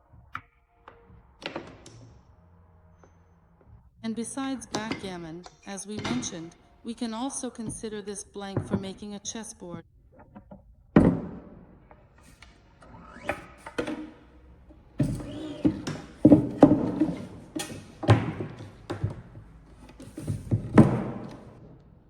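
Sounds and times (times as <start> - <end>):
hollow wooden knocks: 4.6 - 6.7, 7.5 - 12.5, 13.7 - 21.6.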